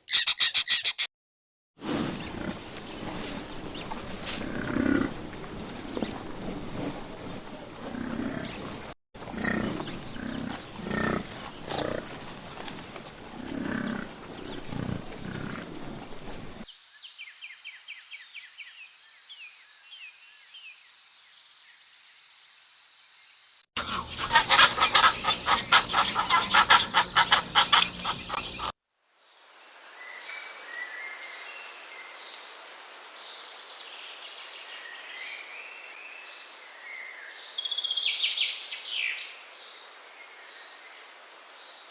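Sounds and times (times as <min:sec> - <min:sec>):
high bird-like chirps: 0:00.0 - 0:01.1
low repeated animal calls: 0:02.1 - 0:16.6, 0:23.8 - 0:28.7
loud pulsing rattling call: 0:23.8 - 0:28.7.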